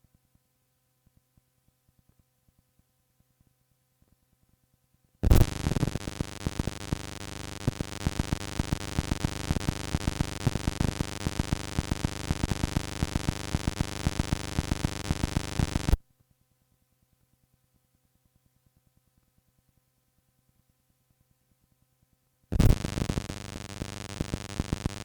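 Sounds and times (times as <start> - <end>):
mains hum: 0.0 - 25.0
crackling pops: 5.2 - 16.0, 22.5 - 25.0
static hiss: 5.2 - 16.0, 22.5 - 25.0.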